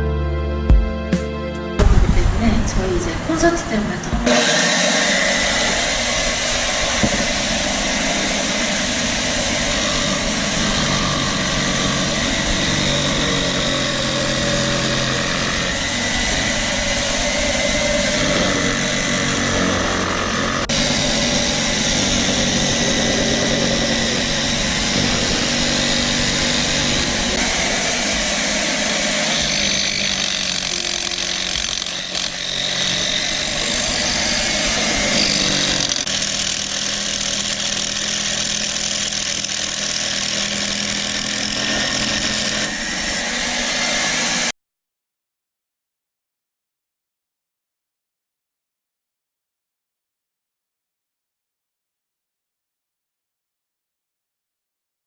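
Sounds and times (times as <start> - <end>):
jigsaw running: 4.2 - 44.6.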